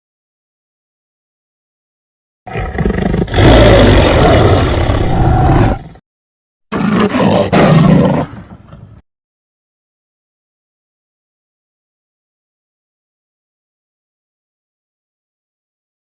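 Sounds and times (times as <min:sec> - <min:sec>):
big cat roaring: 0:02.5 - 0:06.0, 0:06.7 - 0:08.8.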